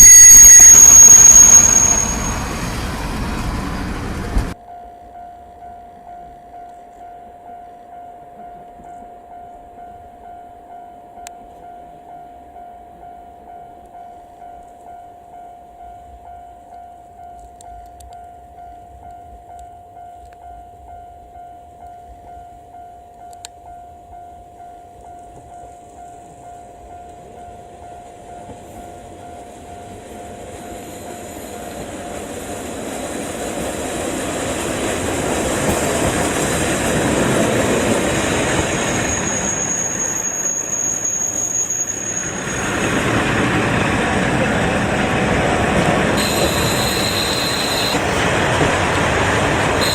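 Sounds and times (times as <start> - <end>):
level-crossing bell dinging: 0.0 - 2.8
high wheel squeal: 0.0 - 4.1, 37.8 - 43.9, 46.2 - 48.3
diesel railcar passing: 0.0 - 16.3, 18.4 - 49.9.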